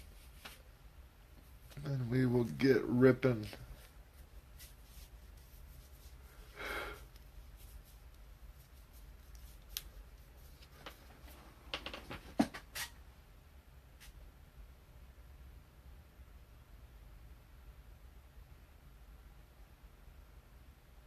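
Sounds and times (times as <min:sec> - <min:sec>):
soft rub: 0:00.0 - 0:00.7, 0:01.3 - 0:11.7.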